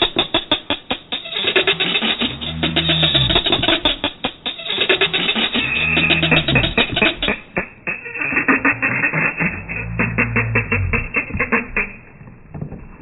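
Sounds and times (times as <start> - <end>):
descending bass line: 2.2 - 4.2, 5.6 - 12.5.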